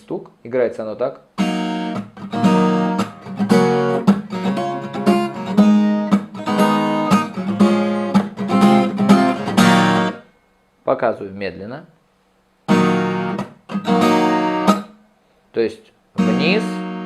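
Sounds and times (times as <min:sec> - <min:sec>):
acoustic guitar strumming: 0:01.4 - 0:10.7, 0:12.7 - 0:15.1, 0:16.2 - 0:17.0.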